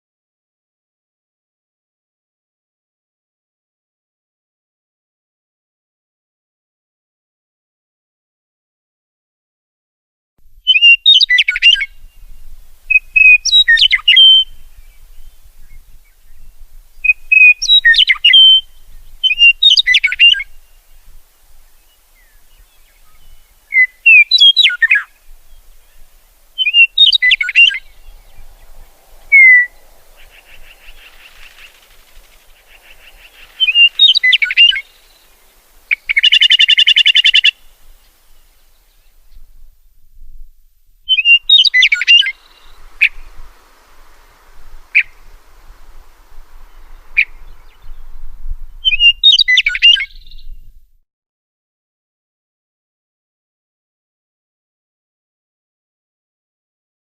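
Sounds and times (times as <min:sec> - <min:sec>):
songbird whistled phrases: 0:10.6 - 0:12.2, 0:12.9 - 0:16.4, 0:17.0 - 0:20.8, 0:22.2 - 0:39.4, 0:41.1 - 0:43.4, 0:44.2 - 0:45.3, 0:46.7 - 0:48.1, 0:48.7 - 0:50.6
faint buzzy bird call: 0:10.6 - 0:39.7, 0:41.1 - 0:50.7.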